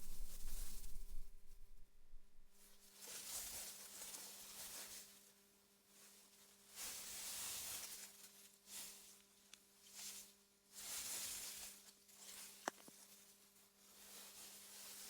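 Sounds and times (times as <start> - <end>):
wind gusting through grass: 0.0 - 2.5
steady low hum: 0.0 - 2.6.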